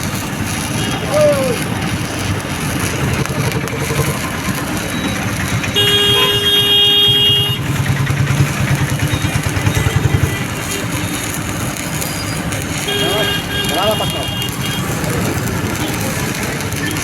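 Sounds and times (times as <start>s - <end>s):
vehicle horn sounding: 0.7s - 1.2s, 5.6s - 7.9s, 9.1s - 11.4s, 12.7s - 15.0s.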